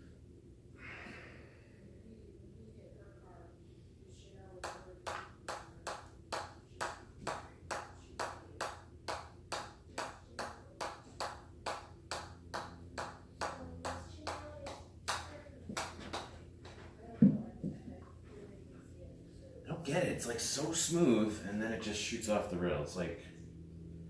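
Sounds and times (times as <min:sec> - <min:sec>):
ball bouncing on hammer head: 0:04.6 - 0:16.3.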